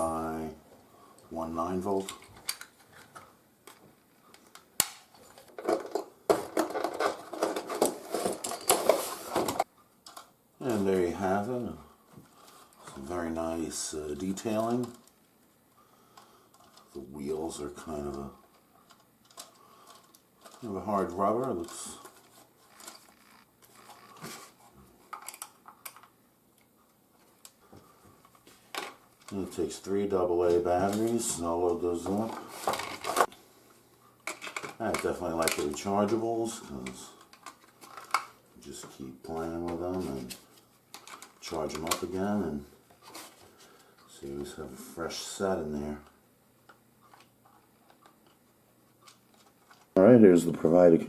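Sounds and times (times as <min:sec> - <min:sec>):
plastic clicking and rustling: 0:02.0 - 0:10.8, 0:16.1 - 0:17.0, 0:17.8 - 0:29.6, 0:30.4 - 0:33.4, 0:34.2 - 0:36.2, 0:36.8 - 0:44.1, 0:46.0 - 0:50.0.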